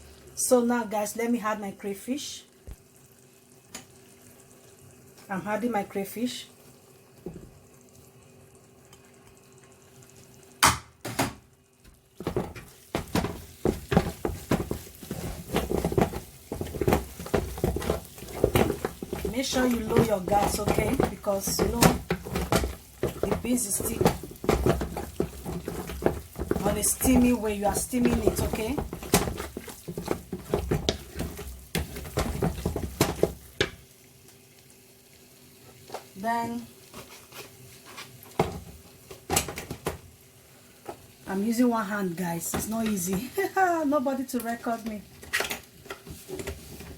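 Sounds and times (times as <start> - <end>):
spoon knocking on pot: 12.2 - 33.8
spoon stirring and scraping pot: 12.2 - 33.8, 36.8 - 39.9.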